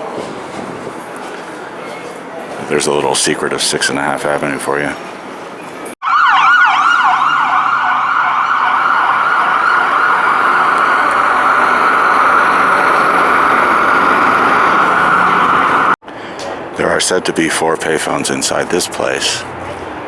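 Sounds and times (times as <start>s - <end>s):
emergency vehicle siren wailing: 6.0s - 16.0s.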